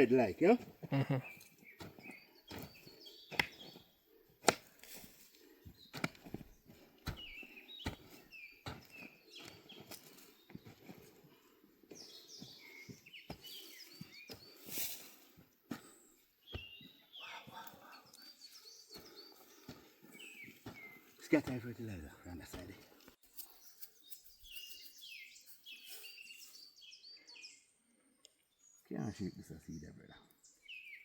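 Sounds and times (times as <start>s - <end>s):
small birds chirping: 0.0s - 31.0s
hoe chopping into soil: 2.5s - 3.8s, 4.4s - 5.2s, 5.9s - 10.0s.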